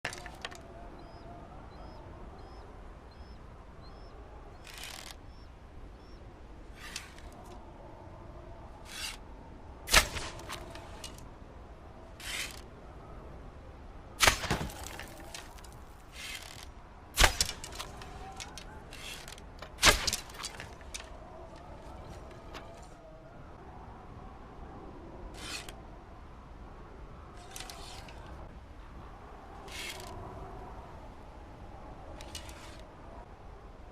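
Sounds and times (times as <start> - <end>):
bow and arrow shots: 9.9 - 11.2, 14.2 - 16.6, 17.2 - 21.1.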